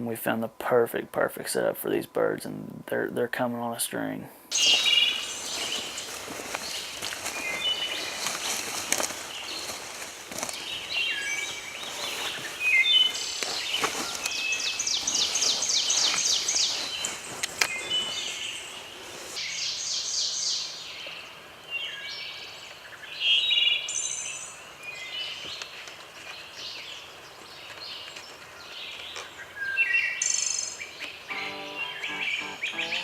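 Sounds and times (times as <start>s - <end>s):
songbirds chirping: 4.0s - 23.2s
fast trilled birdsong: 4.6s - 8.2s.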